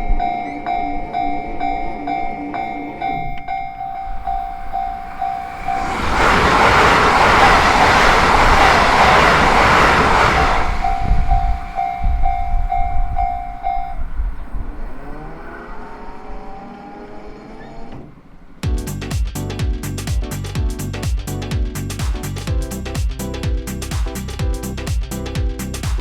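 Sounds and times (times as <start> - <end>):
train rushing past: 0.0 - 17.2.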